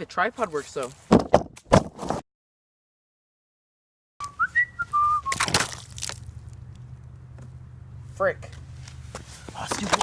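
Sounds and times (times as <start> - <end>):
high sliding whistle tone: 4.2 - 5.4.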